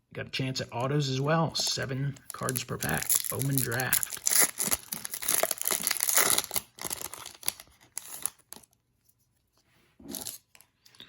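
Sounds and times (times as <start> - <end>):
foil wrapper tearing and crinkling: 2.3 - 8.8.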